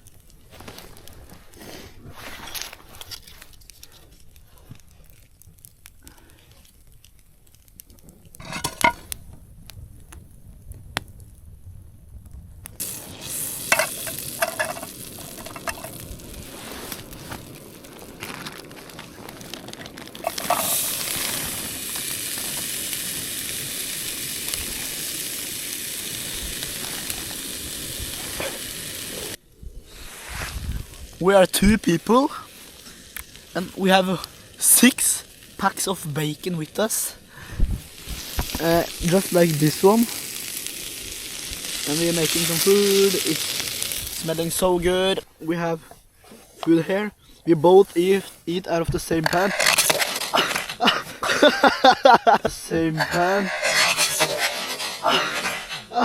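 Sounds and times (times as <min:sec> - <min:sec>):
bacon sizzling in a pan: 0:08.3 - 0:09.2, 0:12.8 - 0:29.4, 0:30.6 - 0:45.2, 0:48.0 - 0:56.0.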